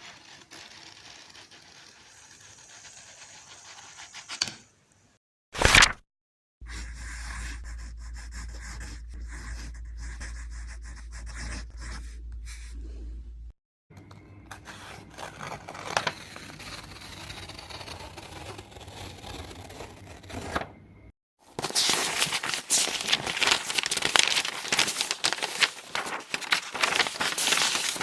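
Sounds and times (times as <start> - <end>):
paper crackling: 21.5 - 28.0
paper scraping and rustling: 21.5 - 28.0.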